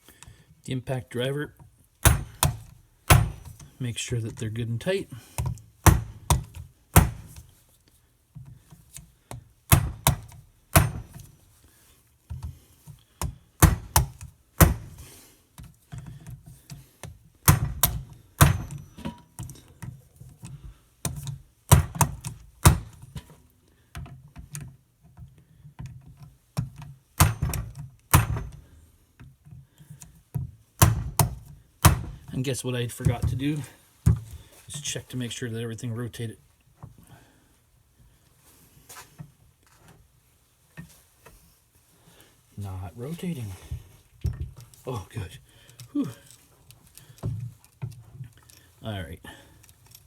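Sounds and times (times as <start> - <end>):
hammer striking impact driver: 2.0 - 3.7, 5.8 - 7.4, 9.7 - 11.2, 17.4 - 19.2, 27.2 - 28.6.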